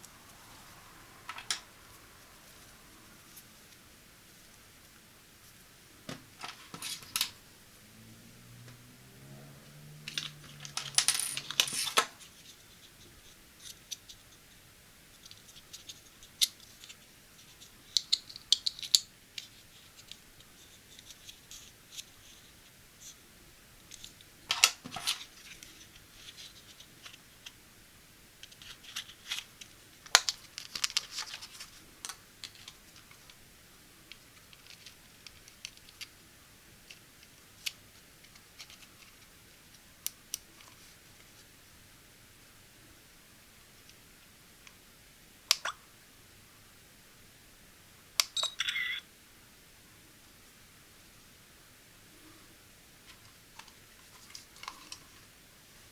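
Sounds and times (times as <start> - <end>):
plastic and cardboard rustling: 28.5 - 33.3, 53.1 - 55.9.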